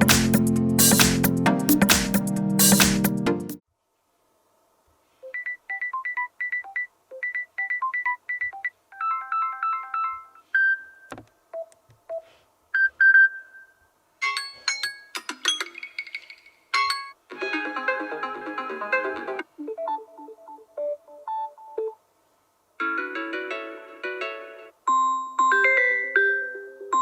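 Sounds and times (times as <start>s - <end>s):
electronic ringtone tunes: 5.2s - 11.7s.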